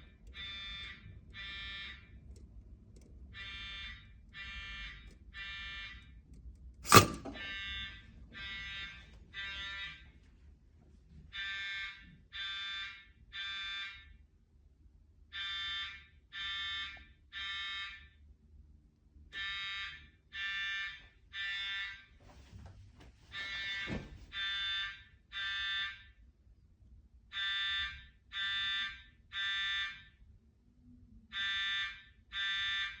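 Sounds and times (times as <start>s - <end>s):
fire alarm buzzing beeps: 0.2s - 2.3s, 3.3s - 6.2s, 6.9s - 10.1s, 11.4s - 14.1s, 15.3s - 18.1s, 19.4s - 22.1s, 23.3s - 26.2s, 27.3s - 30.0s, 31.3s - 33.0s
sharp knock: 6.9s - 7.5s.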